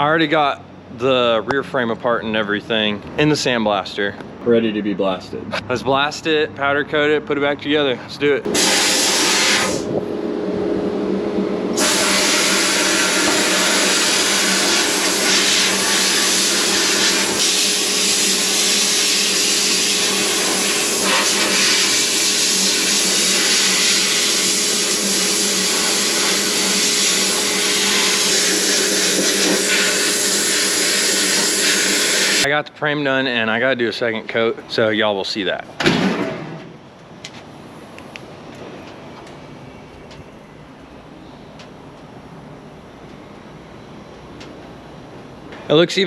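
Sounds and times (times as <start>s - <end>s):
constant hum: 0.0s - 13.8s
sandblaster air hissing: 8.5s - 9.9s, 11.7s - 32.5s.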